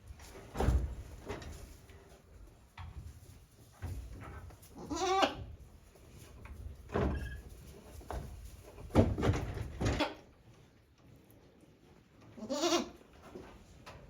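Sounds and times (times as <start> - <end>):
goat kids bleating: 4.8 - 5.5, 12.4 - 13.0
low knocks and thuds: 8.0 - 10.0.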